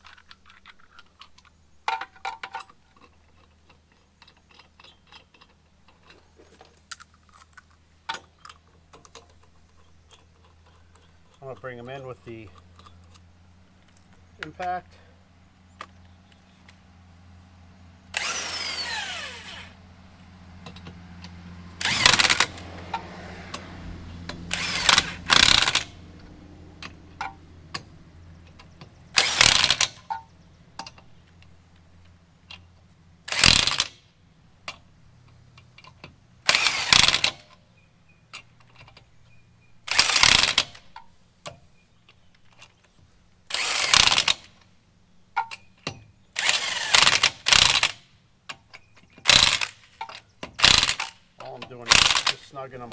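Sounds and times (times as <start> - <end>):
falling whine: 18.1 - 19.9
impact wrench bursts: 18.1 - 19.9, 21.7 - 28.0, 29.0 - 30.3, 33.2 - 34.1, 36.4 - 37.5, 39.9 - 40.8, 43.5 - 44.6, 46.4 - 48.2, 49.2 - 52.9.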